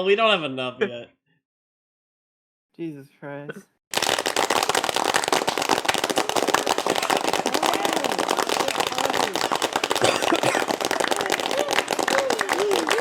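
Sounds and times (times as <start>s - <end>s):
hand clapping: 3.9s - 13.0s.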